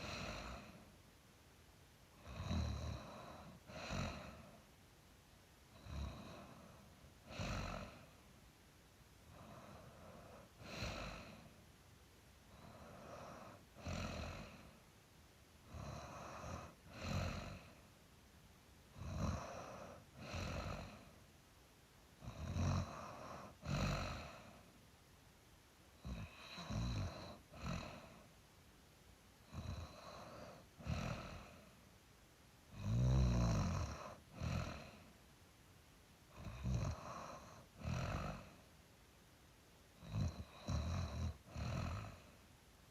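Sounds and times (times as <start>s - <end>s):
person snoring: 0.0s - 0.8s, 2.2s - 4.6s, 5.7s - 8.2s, 9.3s - 11.5s, 12.5s - 14.8s, 15.7s - 17.8s, 18.9s - 21.2s, 22.2s - 24.7s, 26.0s - 28.3s, 29.5s - 31.7s, 32.7s - 35.1s, 36.3s - 38.6s, 40.0s - 42.3s.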